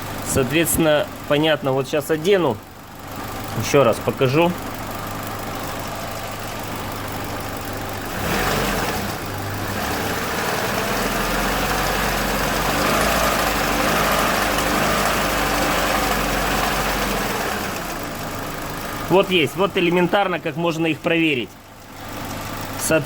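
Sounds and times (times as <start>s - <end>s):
car engine revving: 5.6s - 20.1s.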